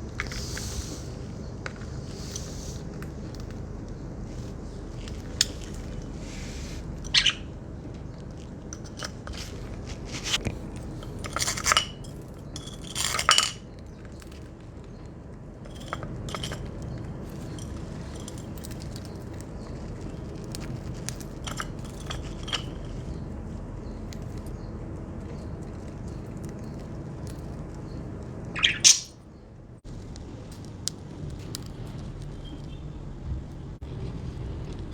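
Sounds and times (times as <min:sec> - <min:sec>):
bird beaks pecking a dish: 0:05.0 - 0:07.6, 0:25.3 - 0:29.1.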